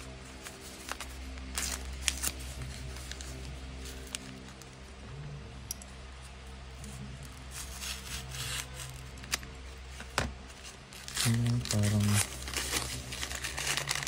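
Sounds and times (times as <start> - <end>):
packaging rustling: 0.3 - 4.8, 7.4 - 14.0
sharp clicks of packaging: 11.1 - 14.0.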